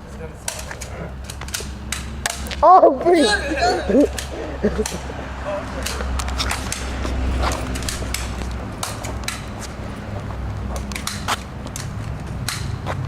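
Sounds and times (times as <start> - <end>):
bb gun shots snapping: 10.8 - 12.8.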